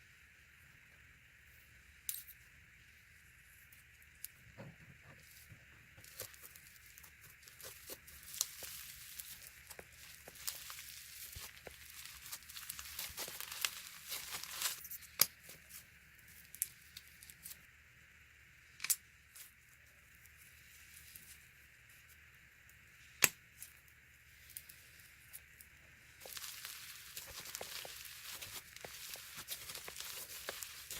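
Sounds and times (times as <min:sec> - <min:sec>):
slime being squished by hand: 0:06.1 - 0:14.8, 0:26.2 - 0:30.9.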